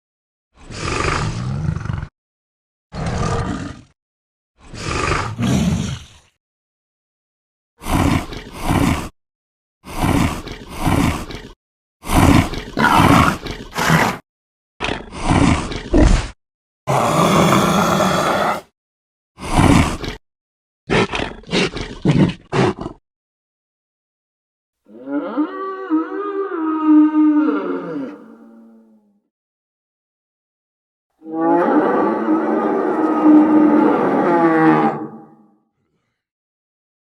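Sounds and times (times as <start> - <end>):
bull bellowing: 24.9 - 29.1.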